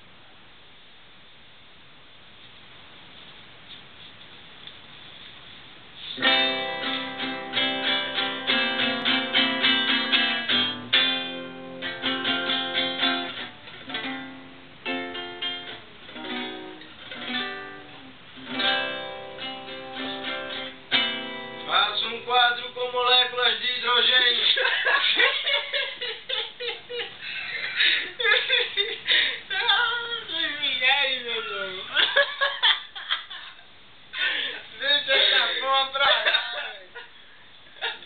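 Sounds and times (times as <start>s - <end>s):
faint hiss: 0.0s - 38.0s
acoustic guitar chords: 6.2s - 24.8s.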